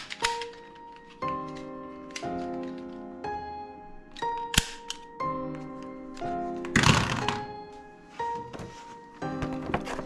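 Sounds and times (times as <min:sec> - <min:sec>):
background music: 0:00.0 - 0:10.0
toy gun firing crack: 0:04.2 - 0:05.1.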